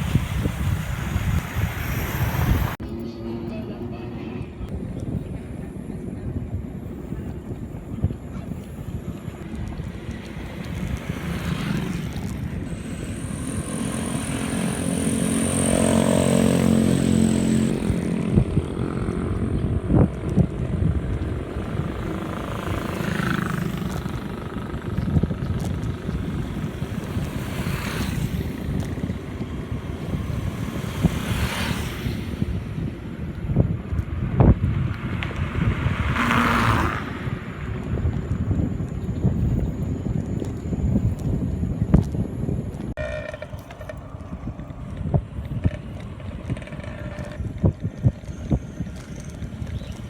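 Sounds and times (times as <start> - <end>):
road rumble: 0.0 - 50.0
wind: 0.0 - 50.0
vehicle engine passing: 9.4 - 33.7, 34.4 - 41.2.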